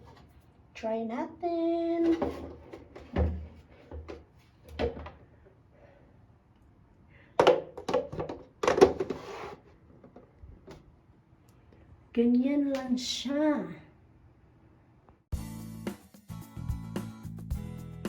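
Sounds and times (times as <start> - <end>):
plastic scrape: 8.9 - 9.8.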